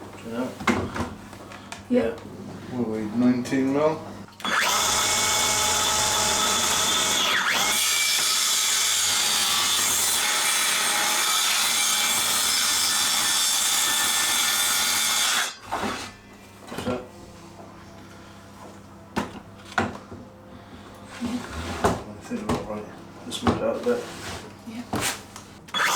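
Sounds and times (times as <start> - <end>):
electric saw cutting wood: 4.3 - 16.2, 25.6 - 25.9.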